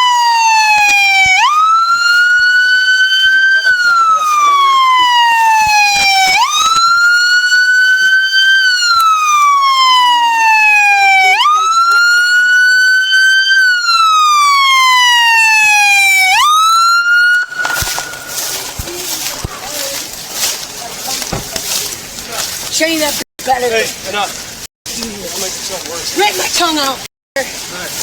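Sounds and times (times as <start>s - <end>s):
police siren wailing: 0.0s - 20.5s.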